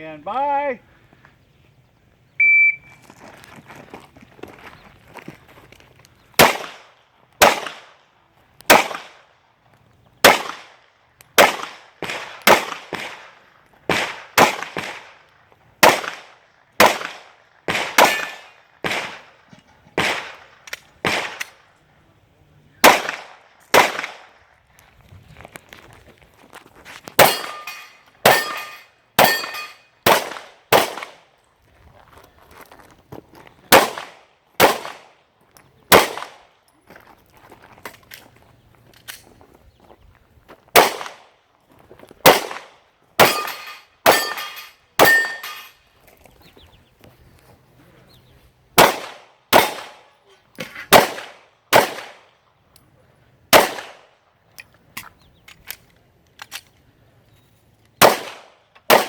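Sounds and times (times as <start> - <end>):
pistol shots echoing: 6.4 - 8.0, 8.7 - 9.3, 10.2 - 19.3, 20.0 - 21.6, 22.8 - 24.4, 27.2 - 31.3, 33.7 - 35.2, 35.9 - 36.5, 40.8 - 41.3, 42.2 - 45.7, 48.8 - 50.1, 50.9 - 52.3, 53.5 - 54.1, 58.0 - 59.0
short metallic ring: 27.2 - 29.9, 43.2 - 45.8.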